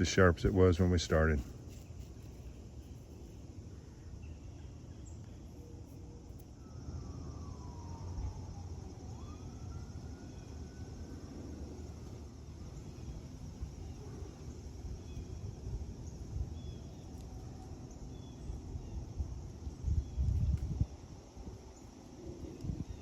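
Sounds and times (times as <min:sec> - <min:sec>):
faint siren-like wail: 0:05.5 - 0:14.4.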